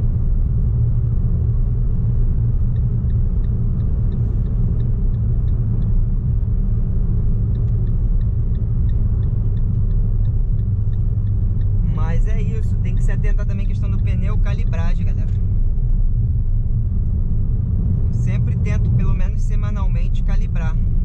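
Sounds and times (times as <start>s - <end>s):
car interior road rumble: 0.0s - 21.0s
faint light ticking: 1.3s - 17.3s.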